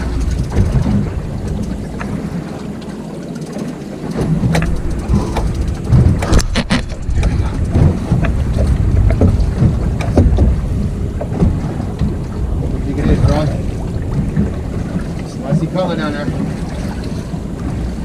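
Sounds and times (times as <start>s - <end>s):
sharp clicks and knocks: 0.0s - 10.6s
wind buffeting microphone: 0.0s - 18.0s.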